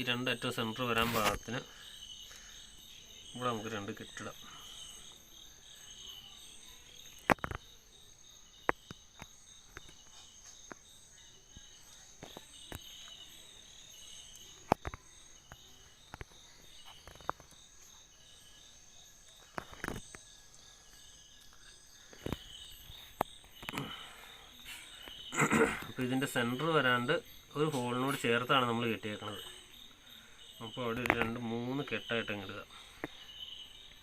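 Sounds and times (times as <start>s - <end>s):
crickets chirping: 0.0s - 34.0s.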